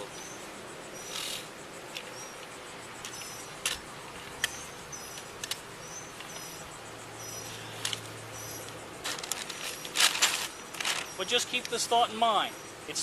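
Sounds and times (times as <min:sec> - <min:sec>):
low steady hum: 0:00.0 - 0:13.0
high bird chirps: 0:03.1 - 0:03.6.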